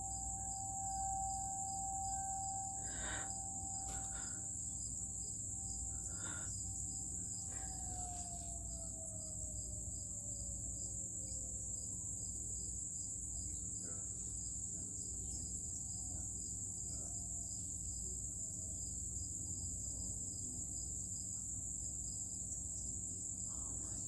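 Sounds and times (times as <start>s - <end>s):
low steady rumble: 0.0s - 7.6s
pulsing chirp: 0.0s - 9.7s
crickets chorus: 0.0s - 24.0s.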